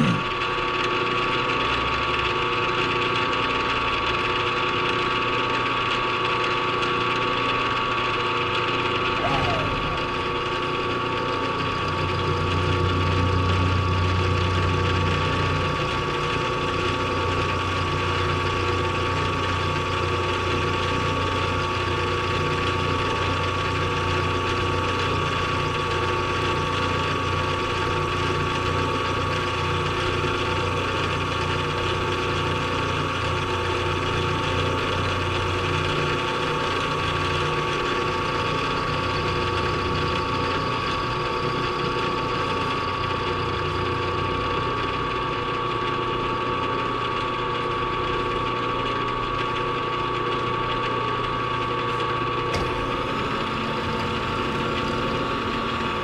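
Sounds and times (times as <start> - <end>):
low motor hum: 9.0 - 17.8, 52.4 - 56.0
machine tool high whine: 9.1 - 16.7, 37.2 - 45.9, 52.5 - 56.0.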